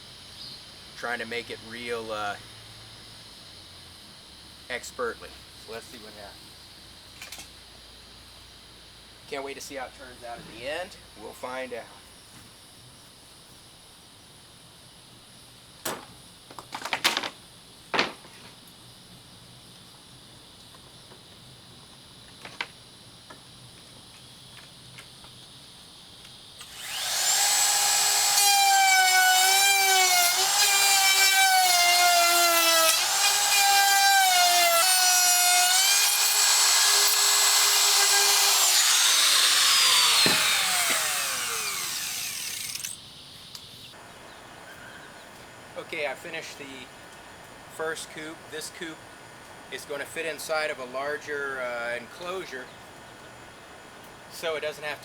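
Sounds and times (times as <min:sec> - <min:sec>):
electric saw cutting wood: 0:26.6 - 0:43.0
wood knocks: 0:40.2 - 0:41.0.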